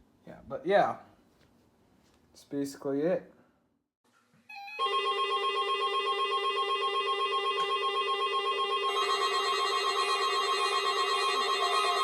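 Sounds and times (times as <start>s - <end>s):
electronic warbling alarm tone: 4.5s - 12.0s
higher alarm tone: 4.5s - 12.0s.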